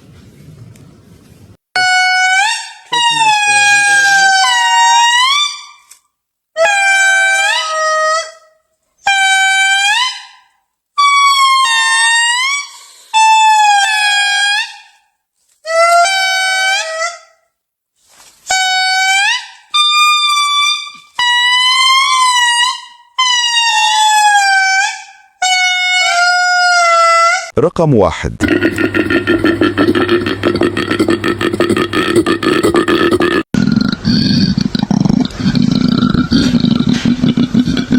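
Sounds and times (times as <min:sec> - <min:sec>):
animal calling: 0:28.4 - 0:37.9.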